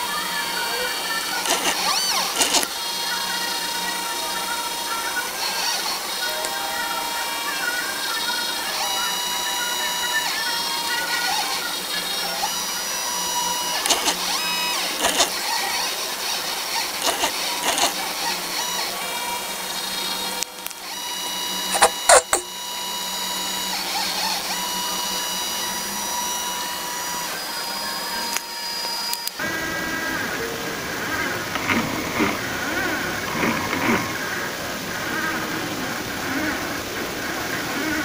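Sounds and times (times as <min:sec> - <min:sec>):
stepper motors whining: 0:00.0 - 0:38.0
sharp clicks: 0:01.4 - 0:02.7, 0:13.8 - 0:14.3, 0:14.9 - 0:15.4, 0:17.0 - 0:18.0, 0:21.7 - 0:22.5.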